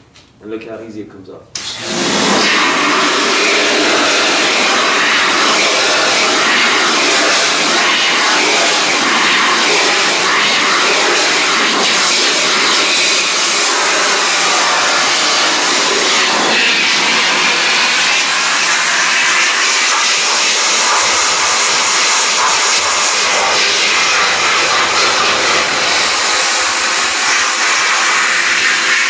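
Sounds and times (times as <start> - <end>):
water spraying on a screen: 1.6 - 29.0.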